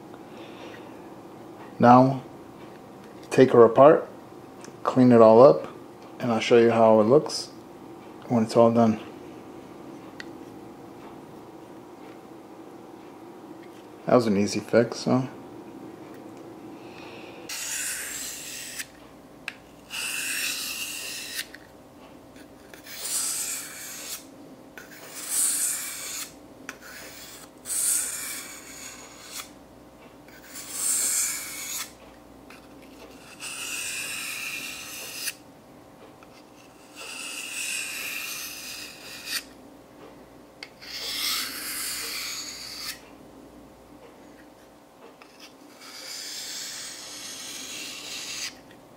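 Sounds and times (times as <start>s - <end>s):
hand scrubbing knife: 17.5s - 19.0s, 19.8s - 21.6s, 22.7s - 24.2s, 24.8s - 29.5s, 30.3s - 31.9s, 33.1s - 35.4s, 36.6s - 39.5s, 40.8s - 43.0s, 45.2s - 48.6s.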